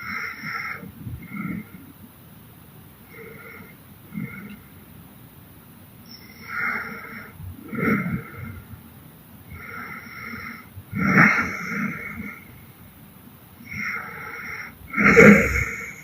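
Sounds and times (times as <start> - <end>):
woman snoring: 13.7 - 16.0.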